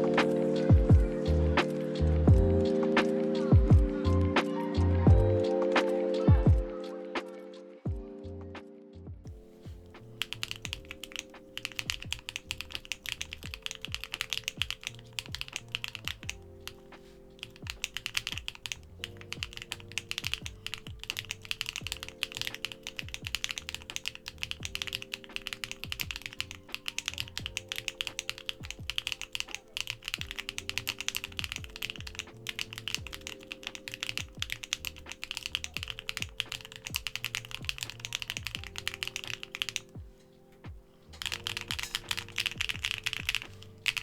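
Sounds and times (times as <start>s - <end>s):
background music: 0.0s - 44.0s
mechanical keyboard typing: 9.4s - 40.0s, 41.2s - 44.0s.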